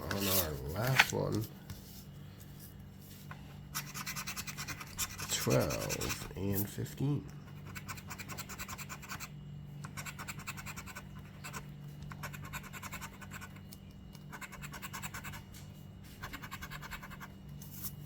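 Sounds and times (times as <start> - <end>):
lottery ticket being scratched: 0.0 - 1.5, 3.8 - 6.7
steady low hum: 0.0 - 18.0.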